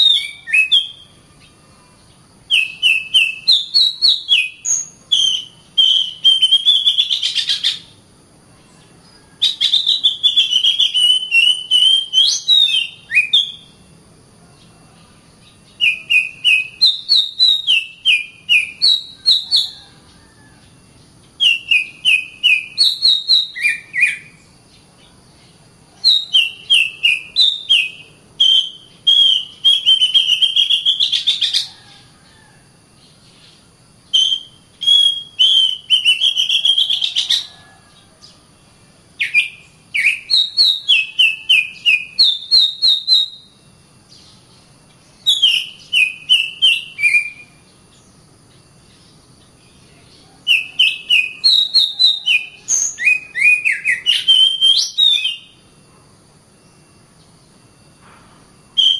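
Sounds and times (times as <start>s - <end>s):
bird singing whistled notes: 0.0s - 8.0s, 8.6s - 13.8s, 14.6s - 25.2s, 26.0s - 32.5s, 33.2s - 38.4s, 39.2s - 55.7s, 56.5s - 58.9s.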